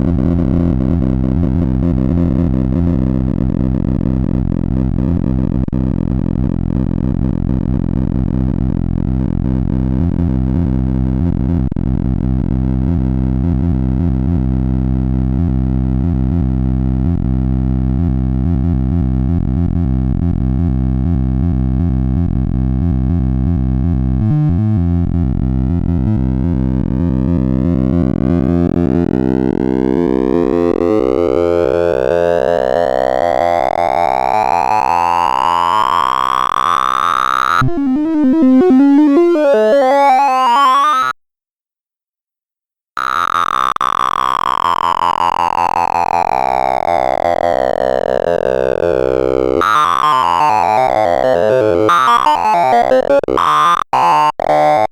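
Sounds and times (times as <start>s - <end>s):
dense buzzing synthesized tones: 0.0s - 20.7s, 22.1s - 41.0s, 43.0s - 54.9s
rising synthesized pitch sweep: 37.6s - 41.0s, 45.2s - 53.6s.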